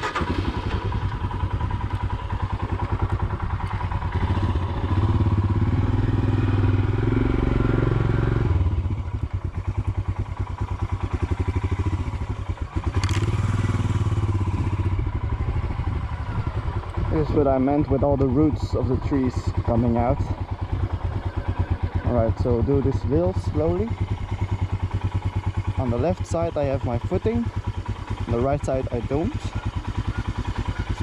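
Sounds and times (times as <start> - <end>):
motorcycle engine at low revs: 0.0 - 31.0.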